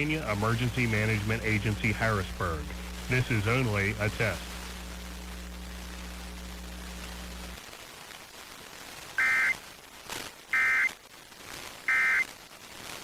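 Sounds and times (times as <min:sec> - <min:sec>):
low hum: 0:00.0 - 0:07.6
raspy digital data tones: 0:09.2 - 0:09.6, 0:10.5 - 0:10.9, 0:11.9 - 0:12.3.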